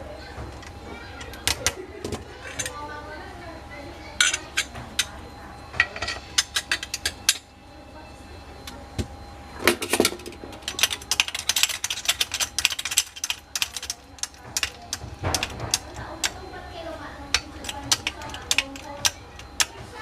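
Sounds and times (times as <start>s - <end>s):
metal tools clicking and clinking: 0.5s - 2.8s, 4.2s - 5.2s, 5.8s - 7.5s, 9.6s - 16.4s, 17.3s - 19.8s.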